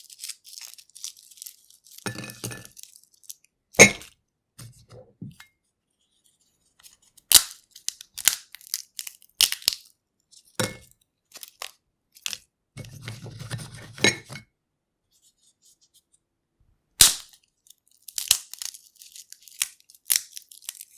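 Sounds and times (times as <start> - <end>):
peanut shells cracking: 0.0 - 3.4, 7.2 - 10.0, 11.4 - 12.4, 17.0 - 20.9
shell pieces rustling: 0.0 - 3.4, 7.3 - 9.9, 17.6 - 20.9.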